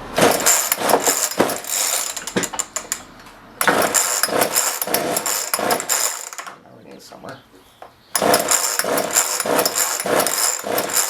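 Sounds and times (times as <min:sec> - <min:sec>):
chainsaw recoil starter rattling: 0:00.0 - 0:06.6, 0:08.2 - 0:11.0.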